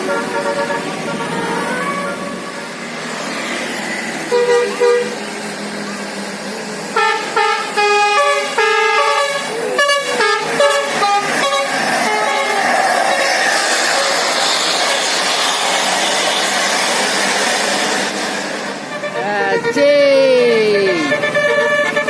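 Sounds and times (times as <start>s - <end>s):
musical bus air horn: 0.0s - 2.8s, 4.2s - 5.3s, 6.9s - 15.1s, 18.0s - 22.0s
traffic noise: 0.0s - 22.0s.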